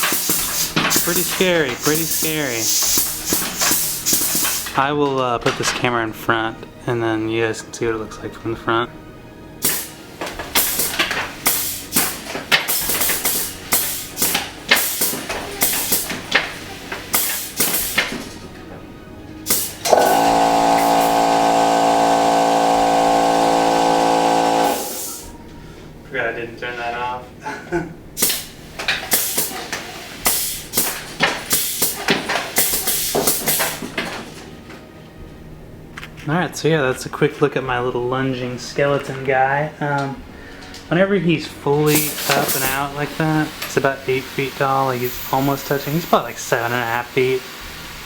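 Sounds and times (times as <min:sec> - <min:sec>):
compressed air hissing blasts: 0:00.0 - 0:04.8, 0:09.6 - 0:18.4, 0:19.4 - 0:25.4, 0:28.2 - 0:34.0, 0:41.8 - 0:48.0.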